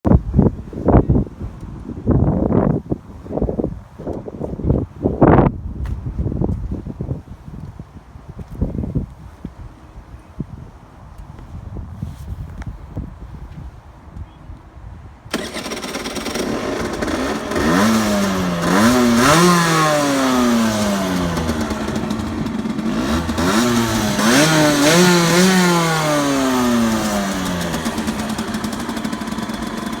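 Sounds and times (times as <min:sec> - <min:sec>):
engine revving throttle blips: 0:15.3 - 0:30.0
moped engine idling: 0:15.3 - 0:30.0
moped engine starting: 0:15.3 - 0:30.0.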